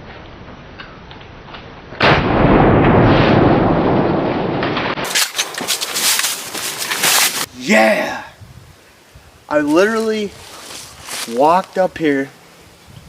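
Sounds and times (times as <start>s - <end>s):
shotgun blast: 2.0s - 5.3s
rustling and handling noises: 5.0s - 7.5s, 9.6s - 12.0s.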